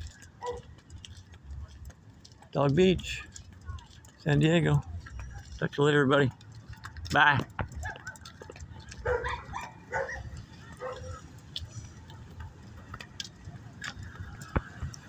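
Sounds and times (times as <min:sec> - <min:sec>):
dog barking: 0:00.4 - 0:00.7, 0:09.0 - 0:11.2.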